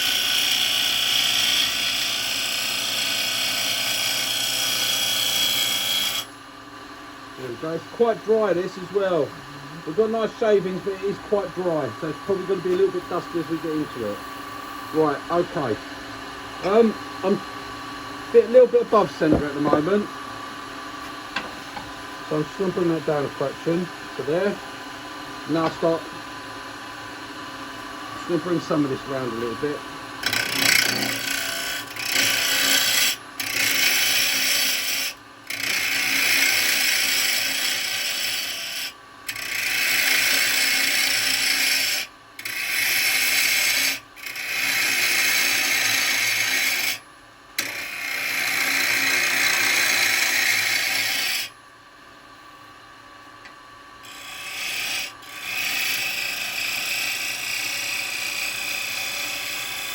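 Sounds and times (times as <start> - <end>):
lathe tool scraping wood: 0.0 - 6.3, 7.4 - 16.0, 16.6 - 17.5, 18.3 - 20.0, 25.5 - 26.1, 28.2 - 47.0, 47.6 - 51.5, 54.0 - 59.9
lathe motor hum: 0.0 - 47.0, 47.6 - 51.5, 54.0 - 59.9.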